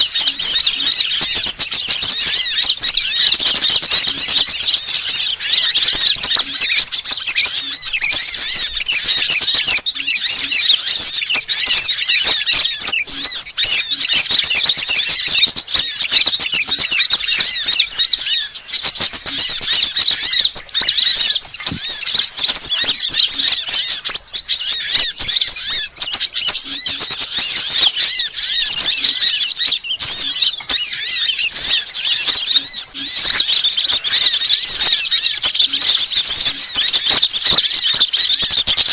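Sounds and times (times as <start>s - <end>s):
songbirds chirping and twittering: 0.0s - 38.9s.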